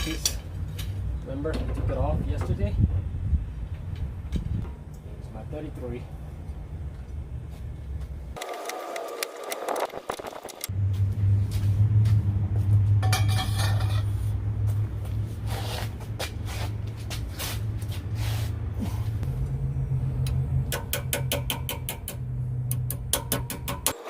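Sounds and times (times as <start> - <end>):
low machine hum: 18.7 - 23.9.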